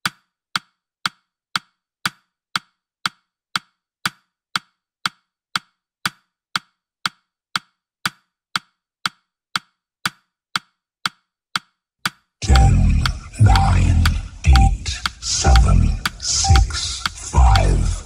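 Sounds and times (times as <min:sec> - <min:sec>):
timer ticking clicks: 0:11.6 - 0:18.0.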